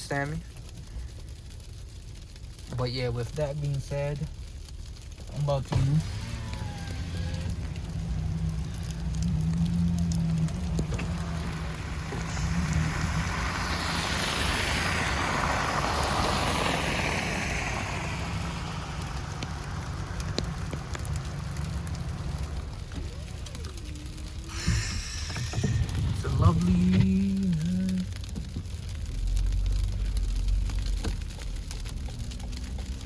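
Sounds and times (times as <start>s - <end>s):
engine and road drone: 4.5s - 33.0s
tyres rushing through slush: 5.4s - 20.1s.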